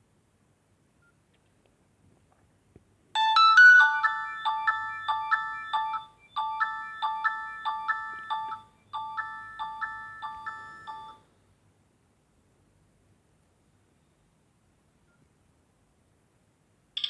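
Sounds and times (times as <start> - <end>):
phone ringtone melody: 3.2 - 11.2.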